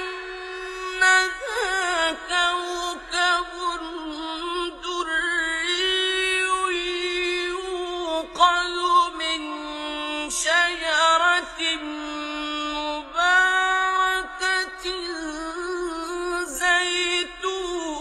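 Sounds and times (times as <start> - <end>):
person chanting recitation: 0.0 - 18.0.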